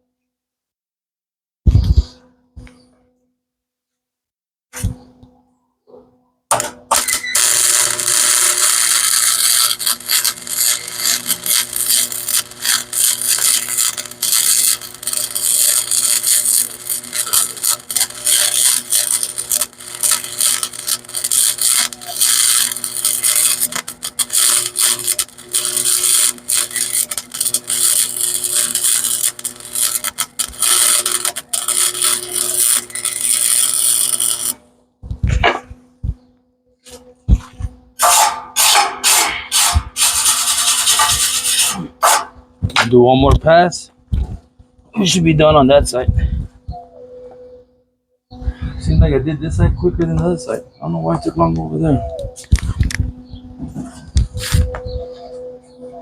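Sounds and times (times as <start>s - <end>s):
welding arc crackling: 6.5s - 35.8s, 36.9s - 43.5s.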